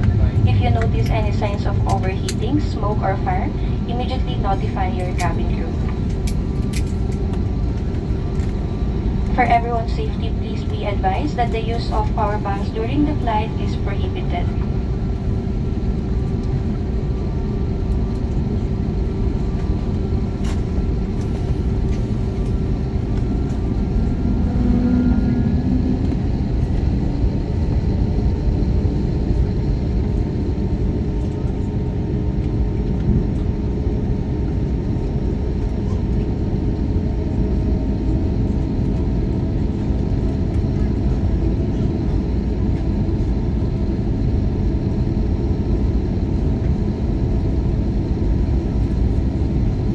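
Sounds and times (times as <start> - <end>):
faint engine whining tones: 0.0 - 49.9
jet engines low rumble: 0.0 - 49.9.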